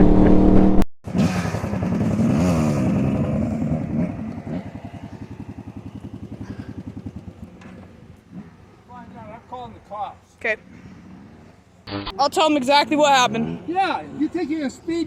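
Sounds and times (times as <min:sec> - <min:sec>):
dirt bike engine revving and idling: 0:00.0 - 0:09.0.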